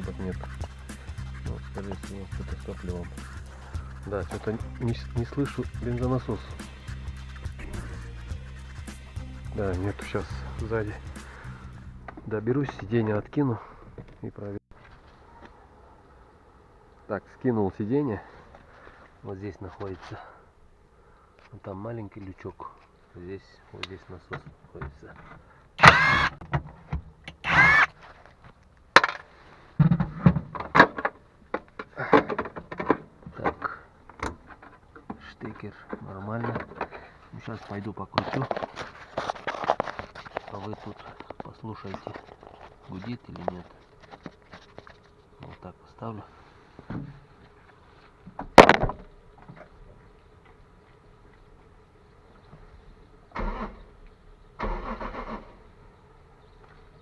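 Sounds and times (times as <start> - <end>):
car engine cranking: 0.0 - 12.4, 25.8 - 26.4, 27.3 - 27.9, 53.4 - 55.8.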